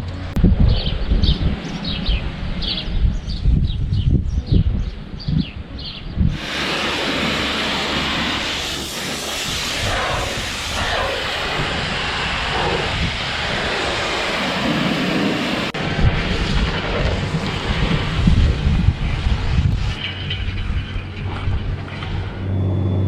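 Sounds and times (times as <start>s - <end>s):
low engine rumble: 0.0s - 23.0s
loud rushing hiss: 6.3s - 20.1s
heavy engine running: 6.4s - 23.0s.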